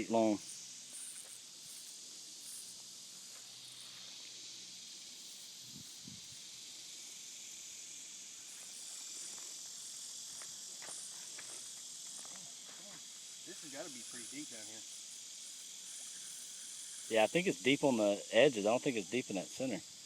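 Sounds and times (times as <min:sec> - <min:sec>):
insects chorus: 0:00.0 - 0:20.0.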